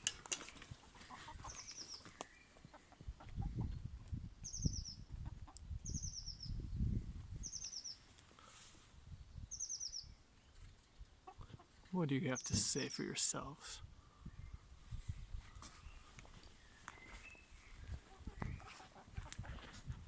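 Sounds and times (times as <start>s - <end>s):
small bird chirping: 0.0s - 8.2s, 9.2s - 11.1s, 15.4s - 19.5s.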